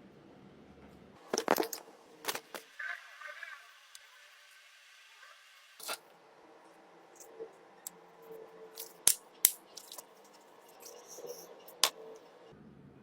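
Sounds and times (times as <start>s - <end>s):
small hard objects clicking: 8.8s - 10.1s.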